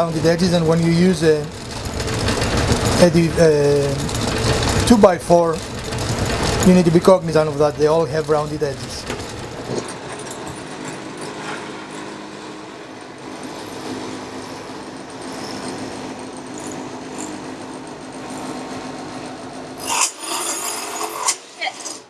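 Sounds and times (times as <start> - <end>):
electric power tool running: 0.0 - 9.9.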